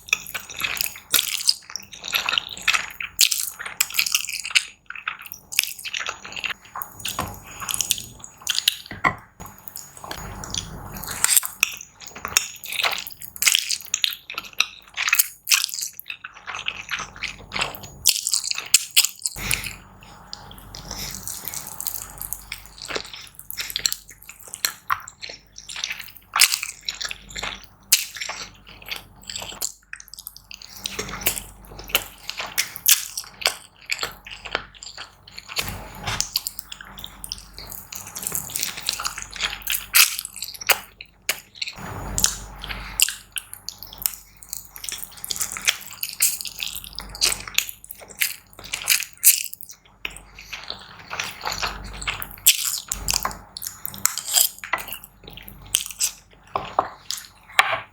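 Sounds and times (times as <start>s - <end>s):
wet chewing and mouth smacks: 0.0s - 57.9s.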